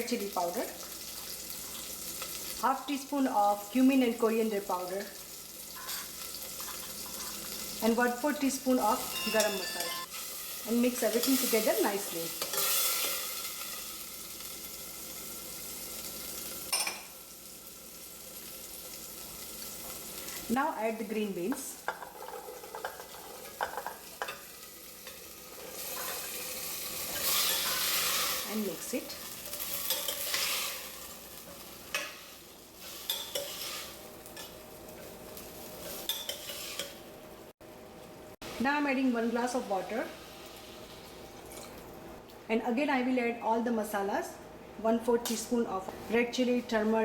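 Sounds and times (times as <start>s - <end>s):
spices sizzling in hot oil: 0.0s - 42.4s
spoon scraping and knocking pan: 21.5s - 28.4s, 29.2s - 35.1s, 35.8s - 37.0s.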